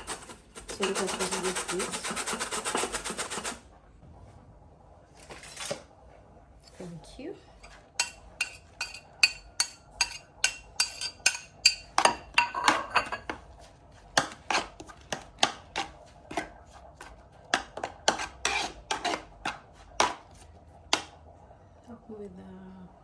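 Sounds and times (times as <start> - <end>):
peel grated on metal grater: 0.0 - 3.6, 17.5 - 20.2.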